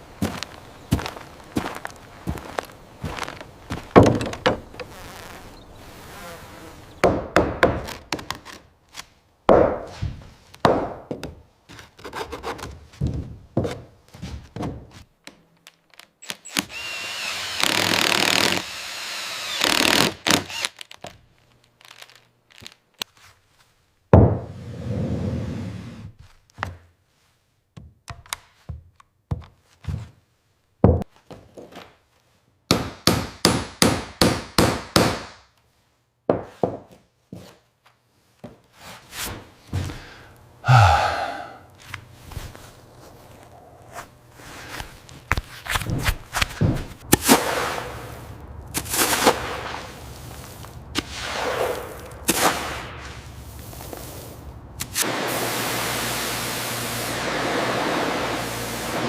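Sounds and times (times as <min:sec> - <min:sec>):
knocks and thuds: 0:03.9 - 0:04.6
steady noisy tool sound: 0:16.5 - 0:20.7, 0:55.0 - 0:59.0.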